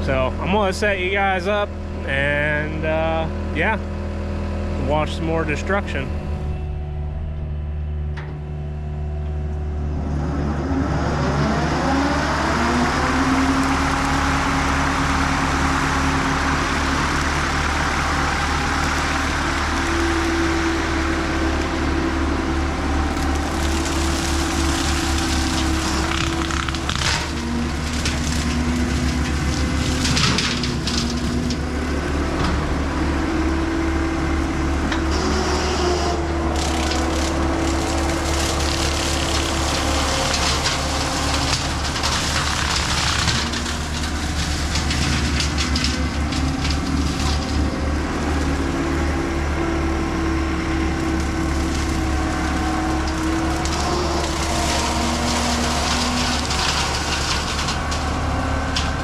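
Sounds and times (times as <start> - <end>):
diesel engine running hard: 0.0 - 59.0
wood cracking and splintering: 11.8 - 31.9, 35.1 - 59.0.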